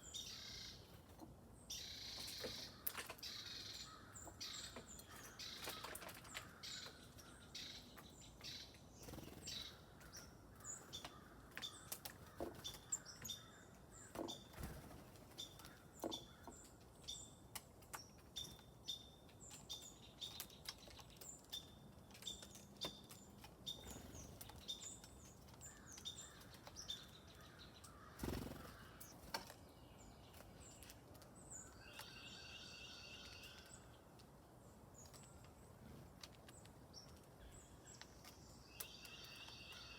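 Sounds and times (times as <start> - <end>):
longer layered bird call: 0.0 - 0.9, 31.5 - 34.0, 37.4 - 39.9
small songbirds chirping: 0.0 - 39.9.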